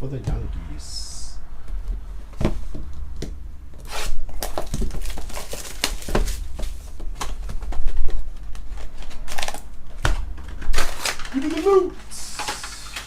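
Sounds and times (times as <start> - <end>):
low electrical hum: 0.0 - 13.0
cards and wrappers rustling: 3.8 - 13.0.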